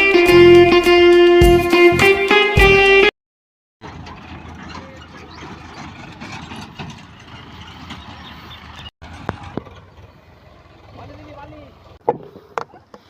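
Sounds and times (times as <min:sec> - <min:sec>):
diesel engine running: 0:03.8 - 0:12.0.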